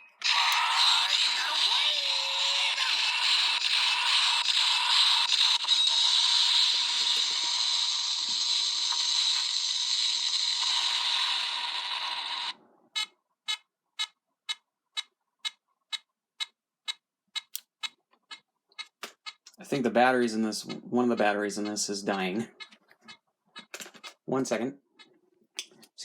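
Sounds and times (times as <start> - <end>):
toy electronic hissing blast: 1.3 - 12.5
sharp electronic clicks: 15.0 - 19.6, 20.6 - 24.2.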